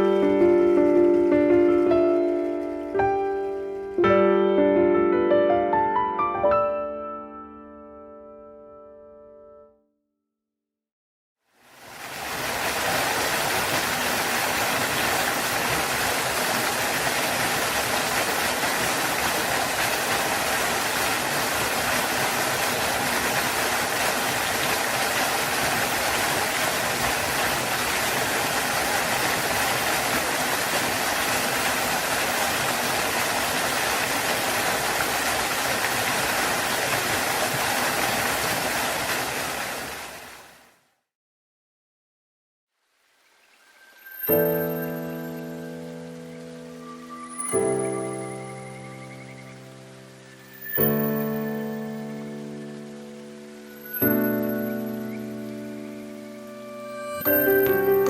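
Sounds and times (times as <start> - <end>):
waterfall rushing: 11.6 - 40.6, 43.8 - 58.0.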